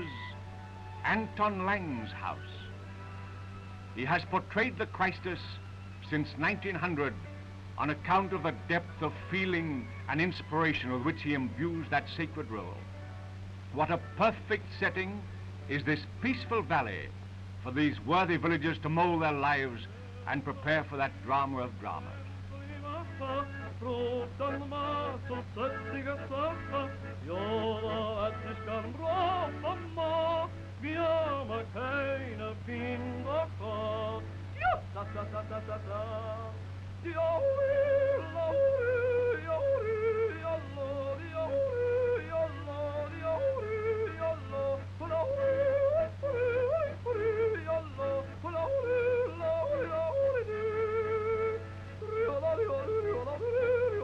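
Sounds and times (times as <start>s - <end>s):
person yodeling: 23.2s - 54.0s.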